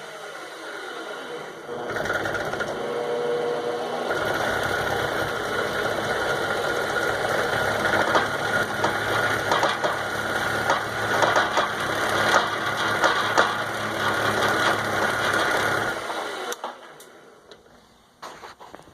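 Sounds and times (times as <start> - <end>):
lathe whining: 0.0 - 17.8
irregular knocking rattle: 6.2 - 16.0.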